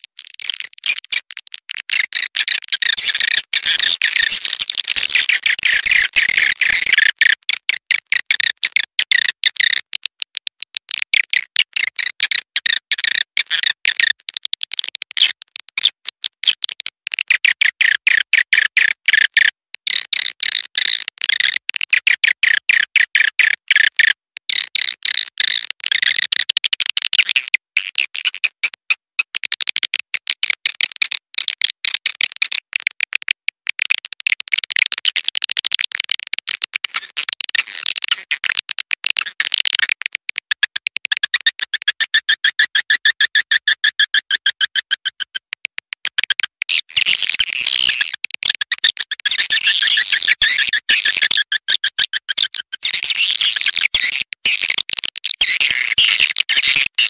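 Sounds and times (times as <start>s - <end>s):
rapid high bird chirps: 2.9s - 6.8s.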